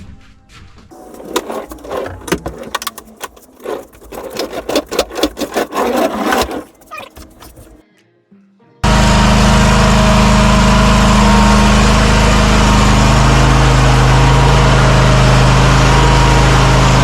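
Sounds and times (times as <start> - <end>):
equipment clattering and scraping: 0.9 - 7.8.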